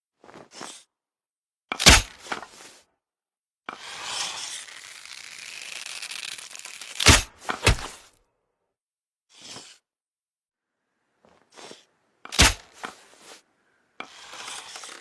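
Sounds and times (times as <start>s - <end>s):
rustling scraping noise: 3.7s - 8.1s, 12.7s - 15.0s.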